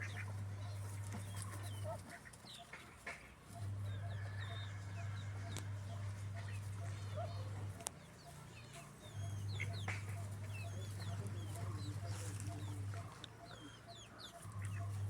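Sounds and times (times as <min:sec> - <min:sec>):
chickens clucking: 0:00.0 - 0:15.0
high-pitched chick peeps: 0:00.0 - 0:15.0.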